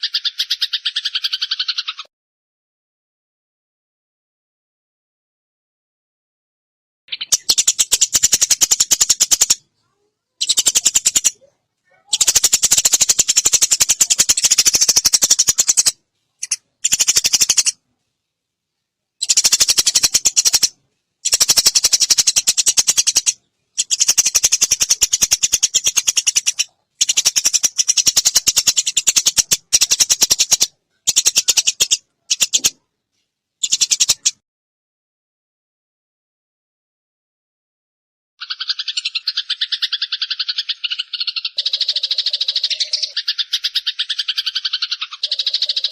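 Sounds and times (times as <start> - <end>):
songbird rattling trill: 0.0 - 2.0, 7.1 - 9.6, 10.4 - 11.4, 12.1 - 17.8, 19.2 - 32.8, 33.6 - 34.4, 38.4 - 45.9.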